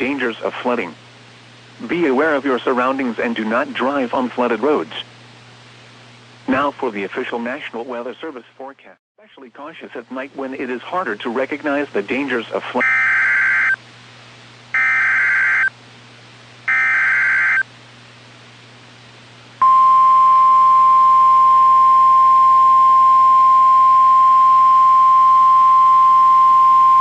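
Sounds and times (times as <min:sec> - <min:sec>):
steady warning alarm tone: 0:12.8 - 0:13.8, 0:14.8 - 0:15.7, 0:16.7 - 0:17.6
warbling data burst screech: 0:12.8 - 0:13.8, 0:14.8 - 0:15.7, 0:16.7 - 0:17.6.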